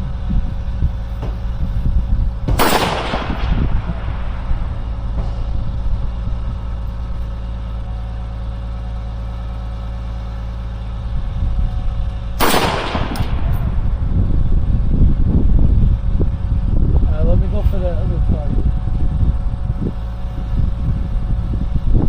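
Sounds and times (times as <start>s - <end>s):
steady low rumble: 0.0s - 22.0s
rifle shot with echo: 2.5s - 4.3s, 12.4s - 13.7s.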